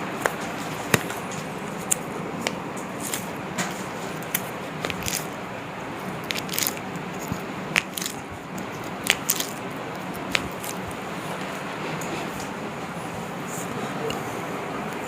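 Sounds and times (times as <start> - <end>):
joints popping and cracking: 0.2 - 5.4, 6.1 - 11.0.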